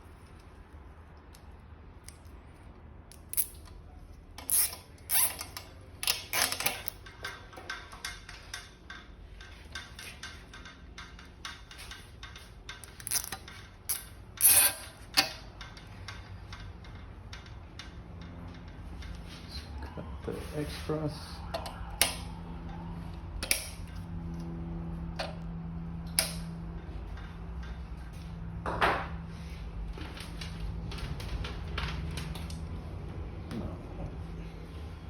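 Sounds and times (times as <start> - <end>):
zip ties ratcheting tight: 4.4 - 6.9.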